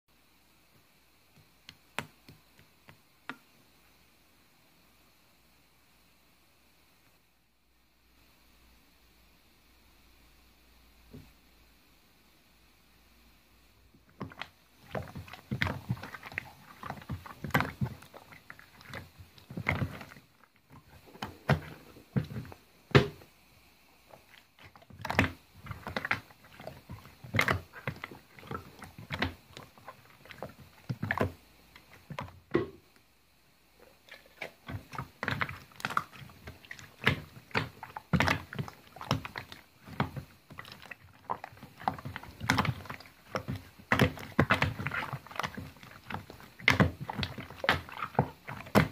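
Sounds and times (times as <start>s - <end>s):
slime squelching and popping: 14.0s - 23.3s, 24.1s - 32.8s, 33.8s - 48.9s.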